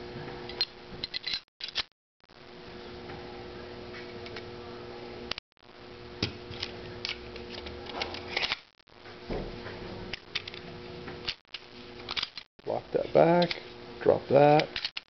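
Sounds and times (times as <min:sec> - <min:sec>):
steady background hum: 0:00.0 - 0:15.0
pistol parts clicking and scraping: 0:01.0 - 0:01.9, 0:06.6 - 0:08.6, 0:10.2 - 0:10.6, 0:11.2 - 0:12.5, 0:13.4 - 0:13.7, 0:14.6 - 0:15.0.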